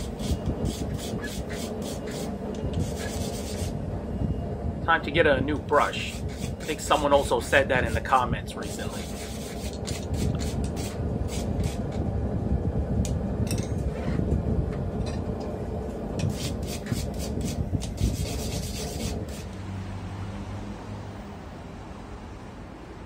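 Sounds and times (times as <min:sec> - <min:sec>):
wire brush scrubbing steel: 0:00.0 - 0:03.8, 0:05.7 - 0:11.8, 0:16.2 - 0:19.6.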